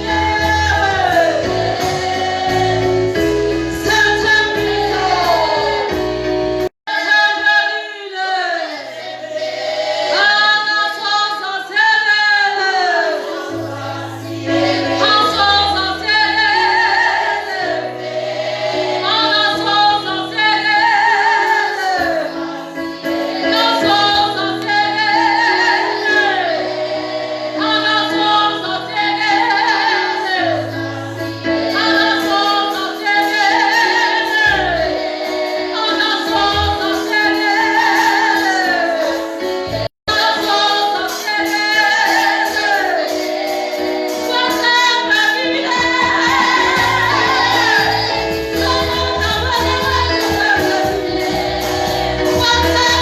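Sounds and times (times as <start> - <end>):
gospel singing voices: 0.0 - 53.0.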